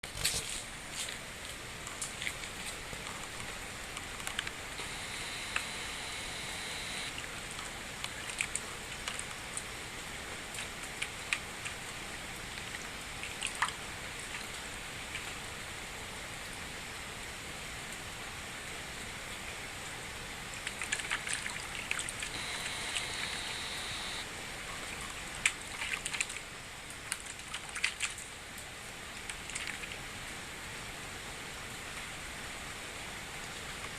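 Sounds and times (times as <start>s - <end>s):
small ticks and splashes: 0.2s - 9.8s, 10.4s - 15.4s, 20.6s - 24.2s, 24.8s - 30.1s.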